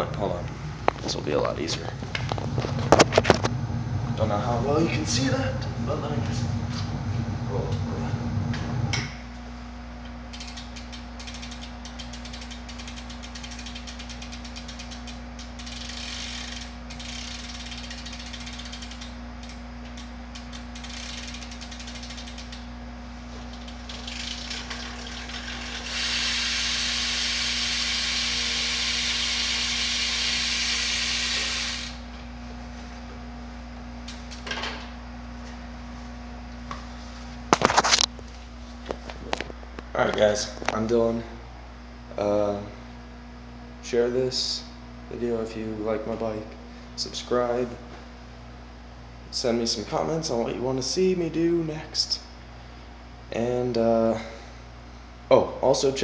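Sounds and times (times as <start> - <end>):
bike hub ratcheting clicks: 10.3 - 22.6, 23.5 - 24.6.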